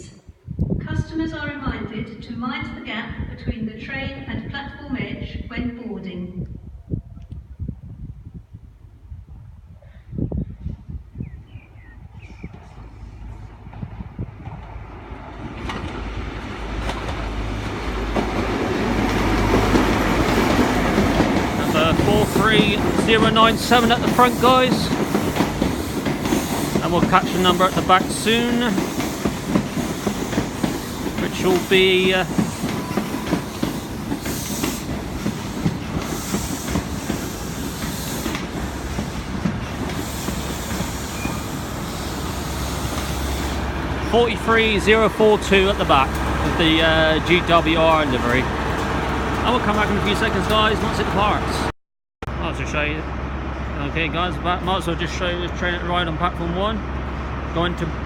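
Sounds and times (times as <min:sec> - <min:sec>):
diesel train approaching: 0:11.2 - 0:58.0
wheels clicking over rail joints: 0:13.7 - 0:51.7
faint wheel squeal: 0:40.1 - 0:41.6.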